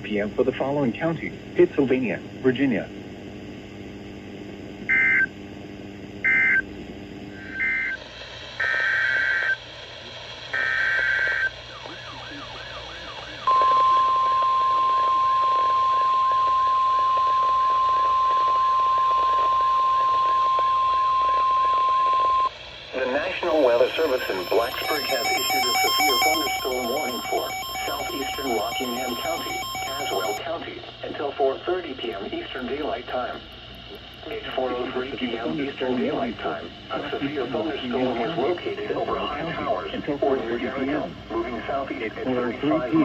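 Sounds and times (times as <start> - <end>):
steady alert tone: 23.4 - 30.4
warbling digital tone bursts: 23.4 - 30.4.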